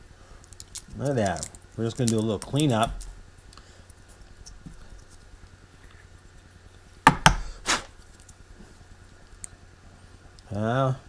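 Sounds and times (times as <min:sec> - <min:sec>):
faint steady hum: 0:00.0 - 0:11.0
sharp knocks: 0:07.1 - 0:07.5.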